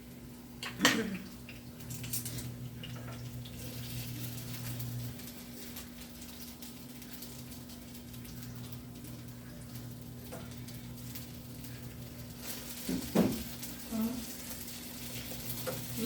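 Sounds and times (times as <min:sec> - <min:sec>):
food sizzling in oil: 0:00.7 - 0:16.0.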